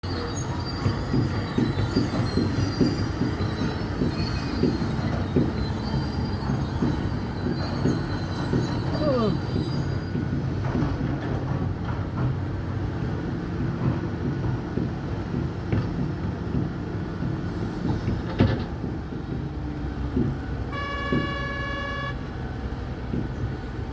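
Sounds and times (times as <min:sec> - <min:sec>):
short falling squeal: 0:00.1 - 0:10.2
metal clanking and squealing: 0:00.1 - 0:11.6
excavator engine rumble: 0:00.1 - 0:23.9.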